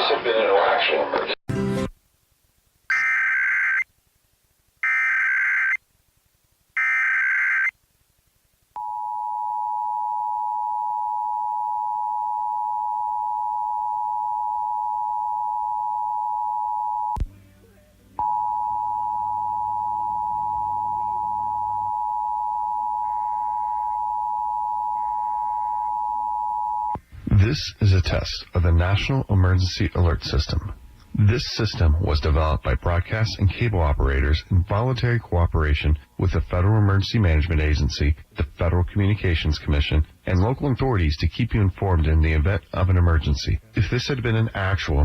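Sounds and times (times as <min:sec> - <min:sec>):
buzzy warbling digital data bursts: 0:02.9 - 0:03.8, 0:04.8 - 0:05.8, 0:06.8 - 0:07.7
low hum: 0:08.8 - 0:29.0.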